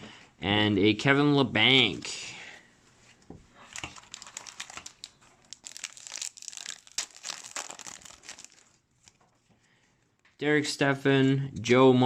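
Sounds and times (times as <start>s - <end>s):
foil wrapper tearing and crinkling: 3.7s - 9.2s.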